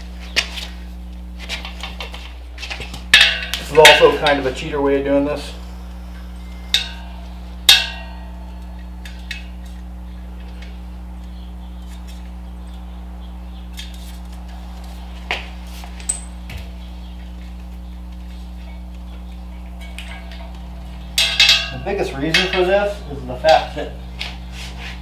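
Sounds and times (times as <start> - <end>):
steady low hum: 0.0 - 25.0
tire irons clanking on wheel rim: 1.4 - 4.6, 6.6 - 9.7, 18.6 - 23.8.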